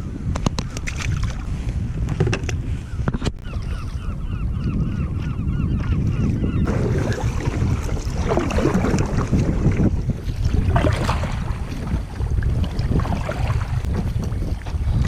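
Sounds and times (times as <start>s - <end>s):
wind buffeting microphone: 0.0s - 15.0s
water splashing against kayak: 6.6s - 15.0s.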